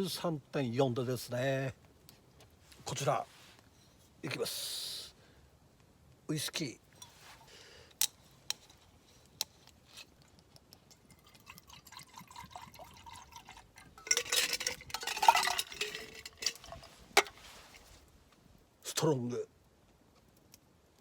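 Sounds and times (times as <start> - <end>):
drink pouring: 10.9 - 17.4
ice clinking in glass: 11.0 - 17.5.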